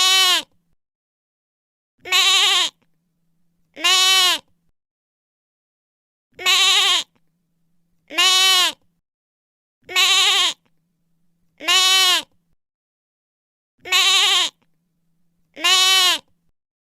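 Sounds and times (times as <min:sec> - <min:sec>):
lamb bleating: 0:00.0 - 0:00.6, 0:02.0 - 0:02.8, 0:03.8 - 0:04.5, 0:06.4 - 0:07.2, 0:08.1 - 0:08.8, 0:09.8 - 0:10.7, 0:11.6 - 0:12.3, 0:13.8 - 0:14.6, 0:15.6 - 0:16.3.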